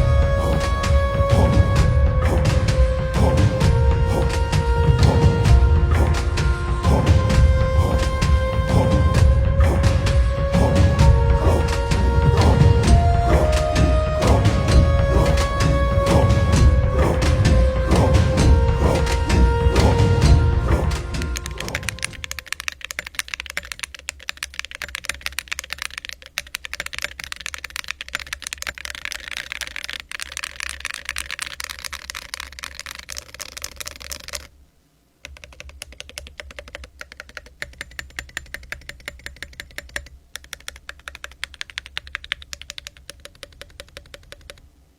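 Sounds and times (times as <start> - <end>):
mechanical keyboard typing: 21.3 - 34.5, 35.2 - 44.6.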